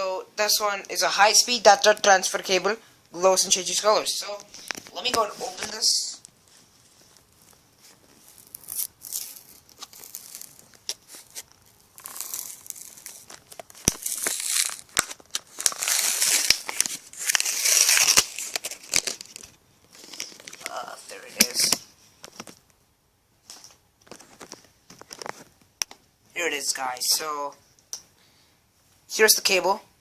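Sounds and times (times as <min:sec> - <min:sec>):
packaging crinkling and tearing: 0:04.6 - 0:22.6, 0:24.0 - 0:25.6.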